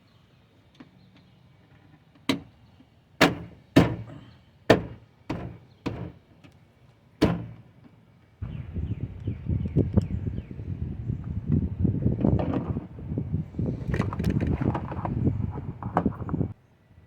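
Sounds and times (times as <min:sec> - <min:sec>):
sharp knocks on plastic panel: 0:03.2 - 0:04.1, 0:04.7 - 0:06.2, 0:07.2 - 0:07.6.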